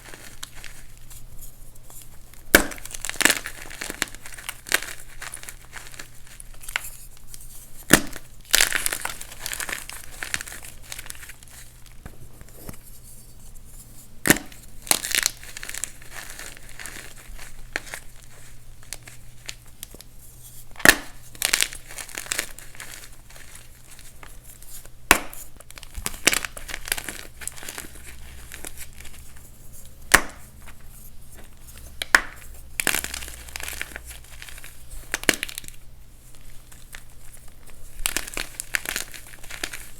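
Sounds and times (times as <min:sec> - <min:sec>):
dry crumbly crunching: 0:01.9 - 0:12.8, 0:14.2 - 0:20.1, 0:20.7 - 0:39.9
chalk block cracking: 0:14.2 - 0:16.8.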